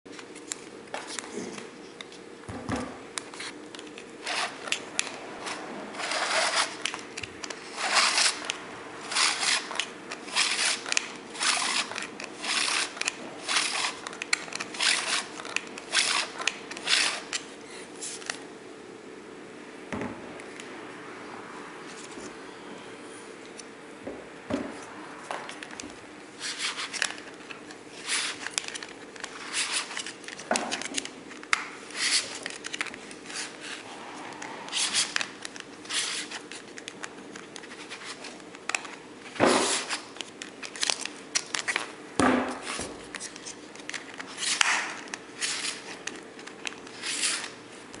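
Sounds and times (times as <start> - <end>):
steady low hum: 0.1 - 48.0
mechanical part scraping and clicking: 4.2 - 17.4.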